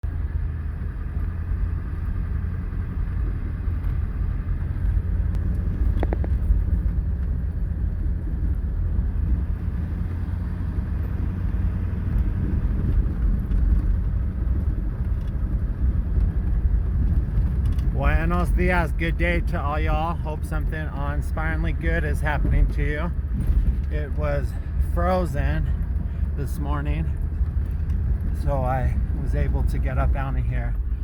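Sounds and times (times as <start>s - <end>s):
vehicle engine and tyres rumbling: 0.0s - 31.0s.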